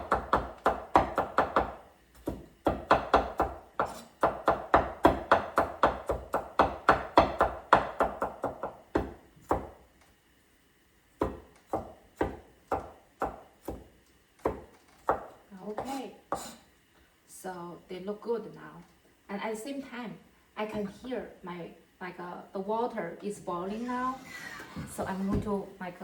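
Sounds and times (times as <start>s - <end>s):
knife chopping on cutting board: 0.0s - 9.8s, 11.2s - 16.6s.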